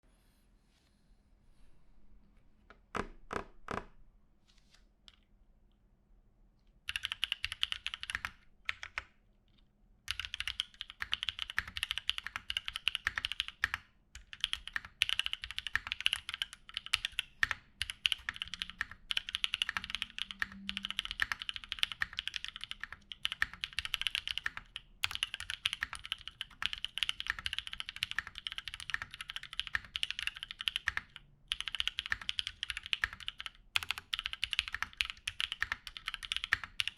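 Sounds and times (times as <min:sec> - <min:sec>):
typing on mechanical keyboard: 0:06.9 - 0:09.1, 0:10.1 - 0:36.9.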